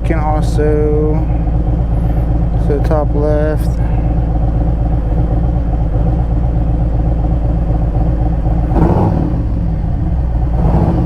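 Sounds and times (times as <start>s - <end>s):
motorcycle engine idling: 0.0s - 11.0s.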